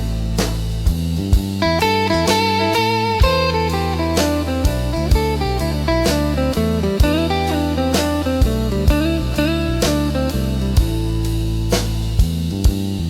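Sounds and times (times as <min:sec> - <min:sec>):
slow drum beat: 0:00.0 - 0:13.0
steady bass: 0:00.0 - 0:13.0
electric guitar blues lines: 0:01.6 - 0:11.9.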